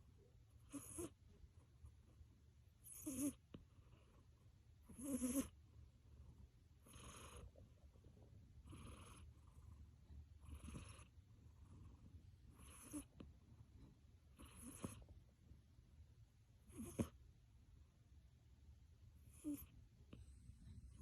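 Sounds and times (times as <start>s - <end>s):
cat snoring: 0.6s - 1.3s, 2.8s - 5.6s, 6.8s - 7.7s, 8.6s - 13.3s, 14.3s - 15.2s, 16.6s - 17.2s, 19.2s - 21.0s.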